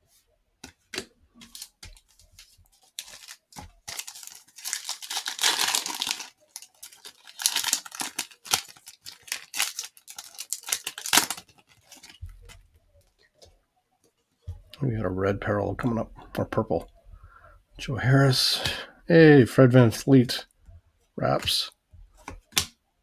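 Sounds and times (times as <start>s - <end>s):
plastic wrapper tearing and crinkling: 1.4s - 12.3s.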